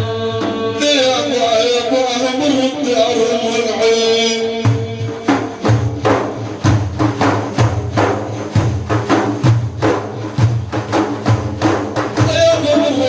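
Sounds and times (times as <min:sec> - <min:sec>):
hand percussion beat: 0:04.6 - 0:13.0
deep drum: 0:04.7 - 0:13.0.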